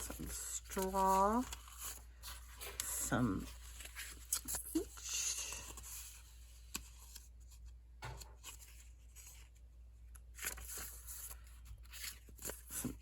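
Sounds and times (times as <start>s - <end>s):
paper sheets rustling: 0.0s - 9.6s.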